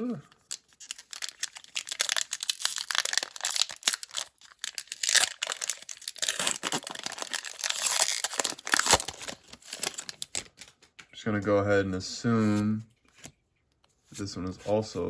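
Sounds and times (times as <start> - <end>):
foil wrapper crinkling and tearing: 0.0 - 10.8.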